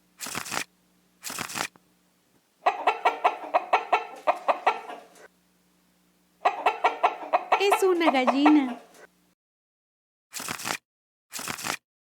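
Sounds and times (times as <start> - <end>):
hen clucking: 2.6 - 5.3, 6.4 - 9.1.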